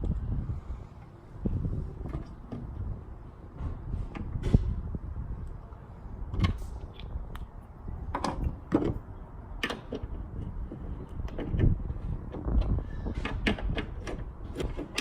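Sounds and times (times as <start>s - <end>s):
hand tool and metal parts clicking: 12.4s - 15.0s.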